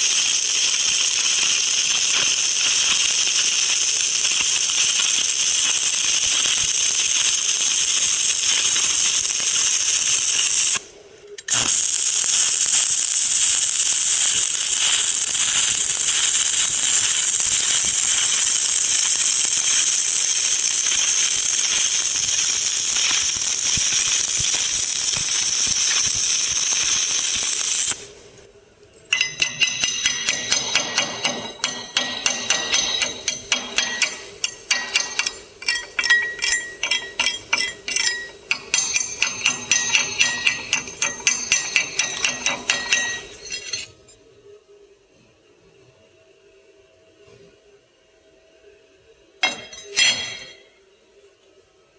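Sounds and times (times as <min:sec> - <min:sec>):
welding arc crackling: 0:00.0 - 0:28.5, 0:29.1 - 0:44.0
ringing metallic clicks: 0:29.1 - 0:44.0.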